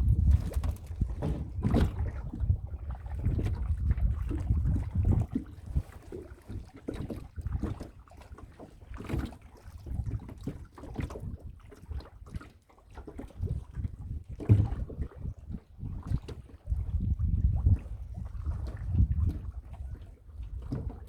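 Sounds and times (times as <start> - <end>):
wind buffeting microphone: 0.0 - 6.2, 13.3 - 21.0
water splashing against hull: 0.0 - 21.0.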